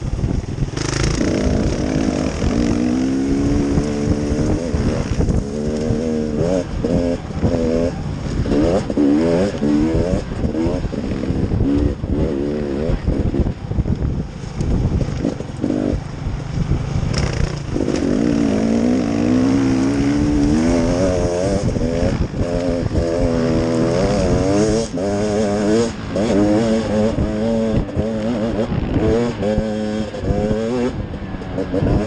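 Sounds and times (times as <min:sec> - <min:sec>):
off-road vehicle engine revving: 0:00.6 - 0:13.6, 0:14.8 - 0:16.4, 0:17.0 - 0:32.0.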